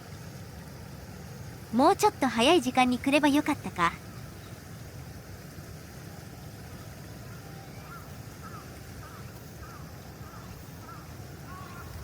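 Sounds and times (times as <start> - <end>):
faint short bird calls: 7.4 - 12.0.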